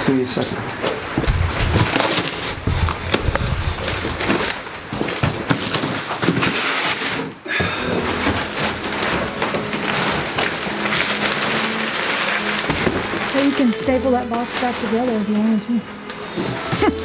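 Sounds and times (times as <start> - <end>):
cardboard rustling and scraping: 0.4 - 17.0
cardboard box knocks and thumps: 1.1 - 13.5.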